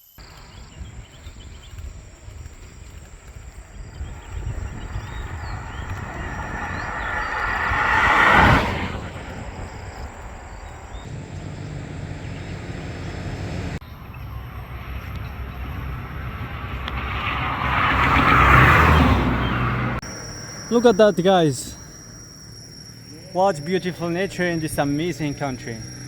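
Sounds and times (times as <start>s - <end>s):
wind rumble on microphone: 0.2s - 13.8s
vehicle passing on road: 0.2s - 26.0s.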